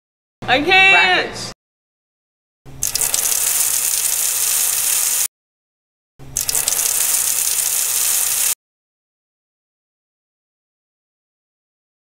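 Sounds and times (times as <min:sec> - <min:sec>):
crackle: 0:02.8 - 0:05.3, 0:06.4 - 0:08.6
loud steady hiss: 0:03.0 - 0:05.3, 0:06.4 - 0:08.6.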